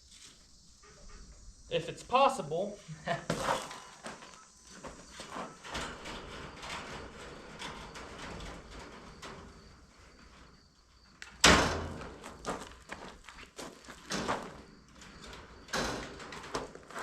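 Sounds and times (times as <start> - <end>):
chicken wire rattling: 5.2 - 10.6, 13.9 - 17.0.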